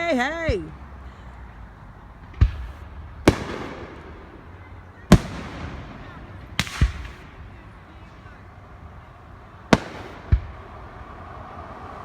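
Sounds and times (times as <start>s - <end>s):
fireworks booming: 2.1s - 11.3s.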